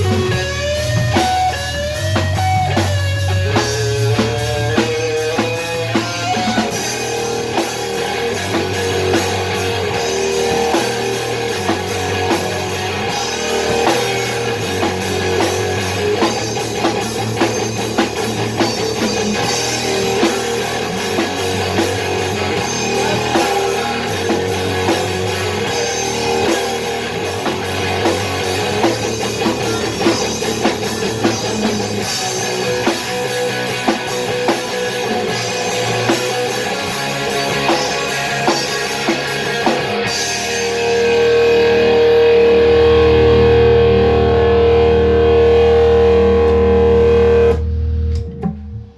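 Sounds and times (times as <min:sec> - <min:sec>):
drum kit beat: 0:00.0 - 0:44.0, 0:44.6 - 0:48.9
guitar playing: 0:00.0 - 0:48.9
rock music: 0:00.0 - 0:48.9.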